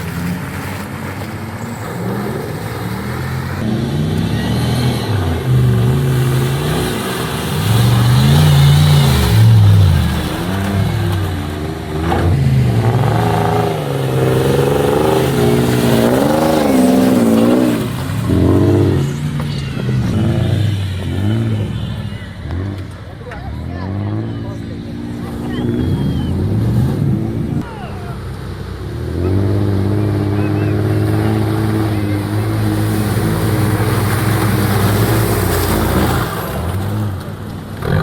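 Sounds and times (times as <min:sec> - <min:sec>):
engine revving: 0:00.0 - 0:38.0.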